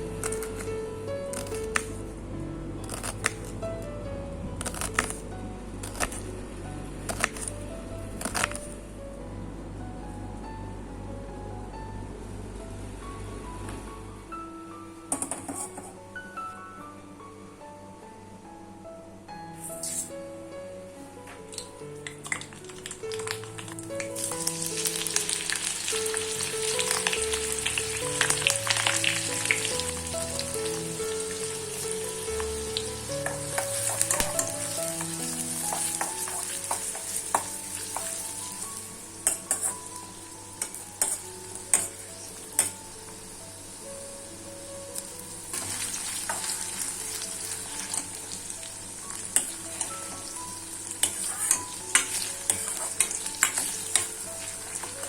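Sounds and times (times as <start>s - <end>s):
soft background music: 0.0s - 55.0s
food sizzling in hot oil: 22.3s - 43.9s, 45.1s - 55.0s.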